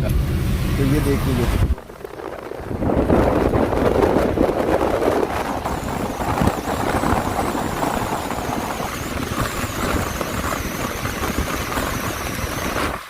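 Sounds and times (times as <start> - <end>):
car engine: 0.0 - 13.0
tyres on wet road: 0.0 - 13.0.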